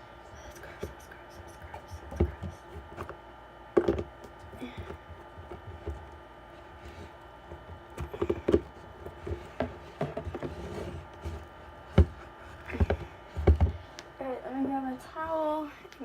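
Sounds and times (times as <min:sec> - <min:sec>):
containers knocking on tabletop: 0:03.8 - 0:06.0, 0:07.6 - 0:10.5.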